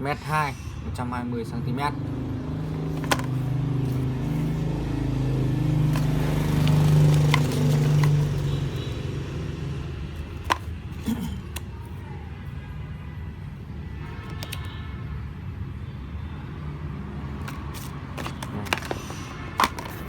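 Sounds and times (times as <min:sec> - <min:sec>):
vehicle engine running: 0:01.9 - 0:10.7.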